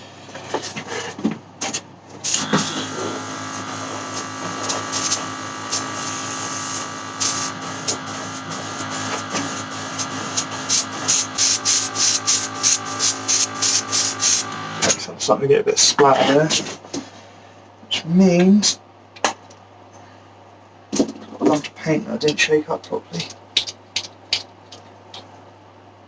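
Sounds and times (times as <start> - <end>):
compressor humming: 2.2 - 15.2
airbrush hissing: 2.3 - 14.9.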